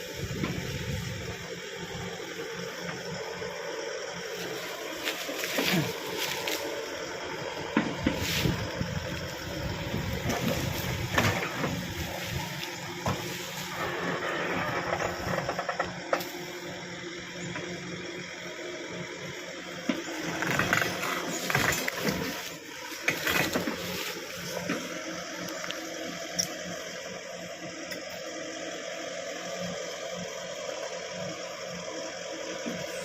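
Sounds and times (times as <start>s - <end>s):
backhoe engine running: 0.0s - 33.0s
branches cracking and rustling: 4.3s - 7.0s, 7.9s - 13.8s, 20.0s - 25.8s.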